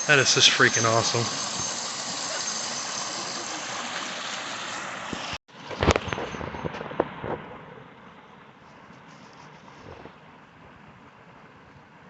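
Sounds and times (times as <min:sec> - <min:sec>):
waterfall rushing: 0:00.0 - 0:05.4.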